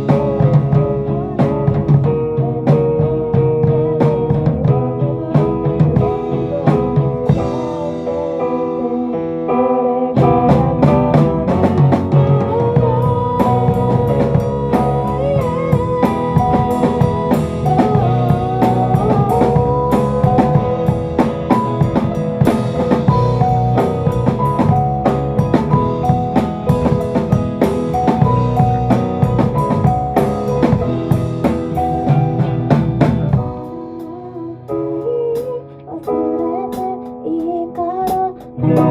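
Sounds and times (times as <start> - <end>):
instrumental rock band music: 0.0 - 38.9
sliding lead guitar melody: 0.0 - 38.9.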